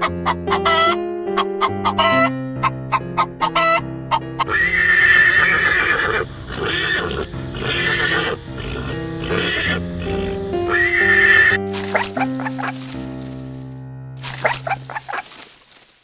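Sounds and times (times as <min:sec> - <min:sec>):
background music: 0:00.0 - 0:15.4
horse neighing: 0:03.4 - 0:12.8.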